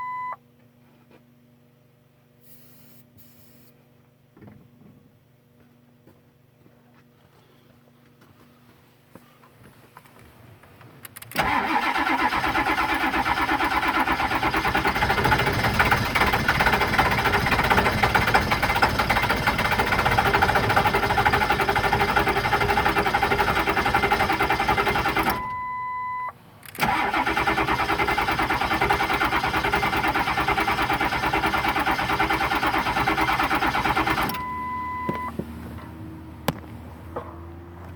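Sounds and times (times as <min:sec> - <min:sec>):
short beep: 0:00.0 - 0:00.4, 0:25.4 - 0:26.3, 0:34.4 - 0:35.4
diesel engine cranking: 0:11.1 - 0:25.9, 0:26.6 - 0:36.6.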